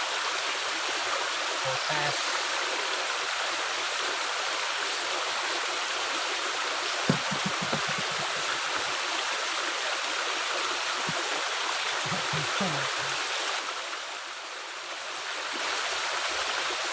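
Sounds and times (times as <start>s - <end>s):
water rushing through culvert: 0.0s - 16.9s
sharp knock: 7.1s - 8.6s
soft low knocks: 7.1s - 8.9s.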